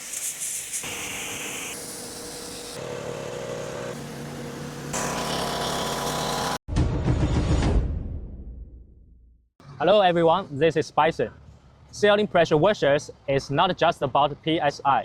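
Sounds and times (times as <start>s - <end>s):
hiss of water spray: 0.0s - 2.8s
pressure washer motor hum: 0.0s - 6.6s.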